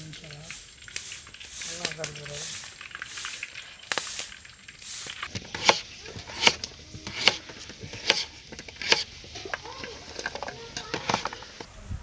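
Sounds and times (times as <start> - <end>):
knife chopping on cutting board: 5.6 - 7.4, 8.0 - 9.0.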